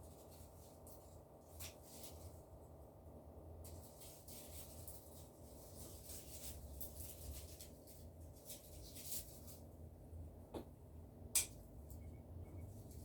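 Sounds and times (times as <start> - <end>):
rustling and scratching handling: 0.0 - 10.2
low steady hum: 0.0 - 13.0.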